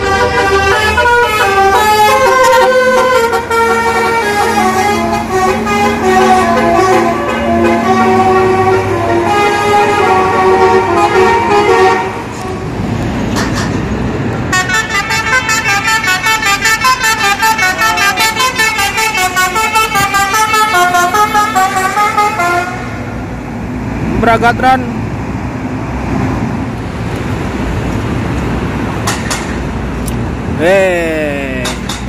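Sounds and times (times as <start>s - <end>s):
musical air horn melody: 0.0s - 12.8s, 14.5s - 23.0s
passing vehicle rumble: 0.0s - 32.0s.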